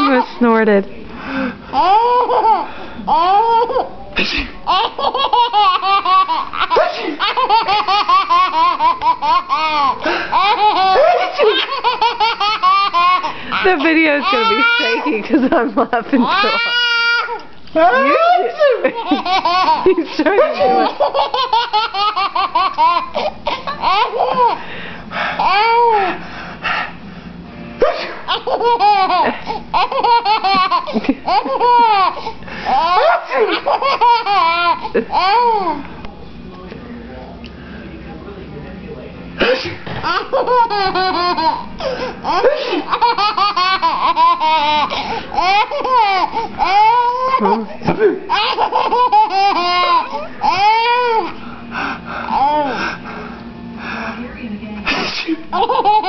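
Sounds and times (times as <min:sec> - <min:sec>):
baby laughing: 0:01.7 - 0:03.9, 0:04.7 - 0:15.1, 0:16.2 - 0:24.6, 0:25.4 - 0:26.0, 0:27.9 - 0:35.8, 0:39.9 - 0:51.4, 0:55.5 - 0:56.0
adult laughing: 0:10.0 - 0:16.8, 0:18.0 - 0:24.6, 0:28.0 - 0:35.8, 0:47.2 - 0:51.2.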